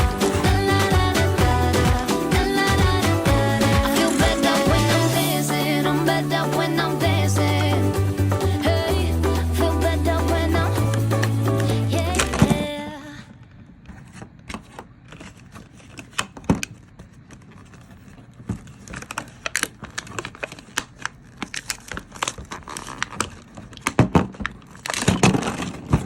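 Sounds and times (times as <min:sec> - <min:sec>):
plastic wrapping crinkling and tearing: 0:14.9 - 0:26.0.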